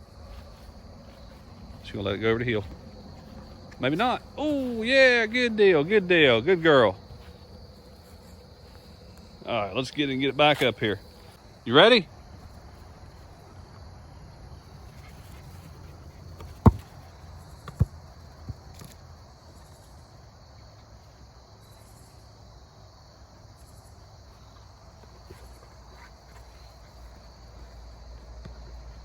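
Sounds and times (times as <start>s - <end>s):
insects chirping: 0.0s - 29.0s
basketball bouncing: 16.4s - 17.0s.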